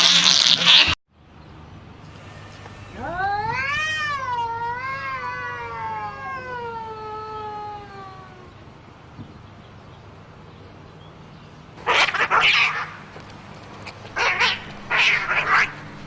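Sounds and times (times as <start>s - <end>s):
cat yowling: 2.9s - 8.5s, 11.8s - 13.0s, 14.2s - 15.9s.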